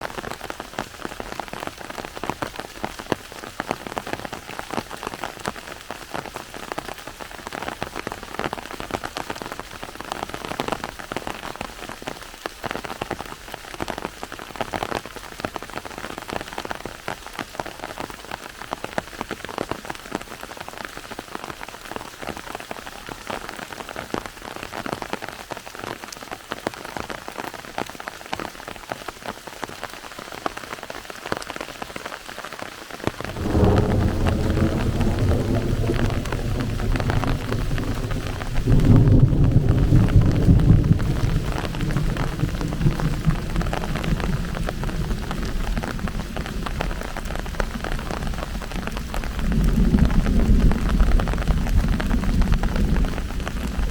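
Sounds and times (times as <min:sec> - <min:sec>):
rain pattering: 0:00.0 - 0:53.9.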